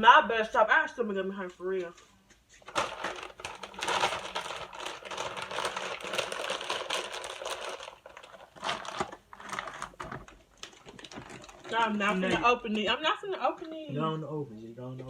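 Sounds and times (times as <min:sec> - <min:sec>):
potato chips crunching: 0:02.7 - 0:11.7
chip bag crackling: 0:02.7 - 0:12.3.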